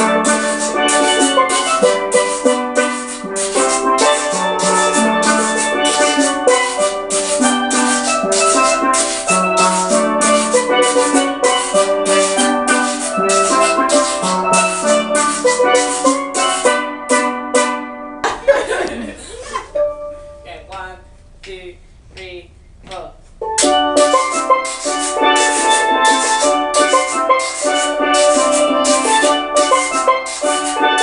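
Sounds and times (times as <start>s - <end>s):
steel pan notes: 0.0s - 21.5s, 23.4s - 31.0s
percussion beat: 0.0s - 31.0s.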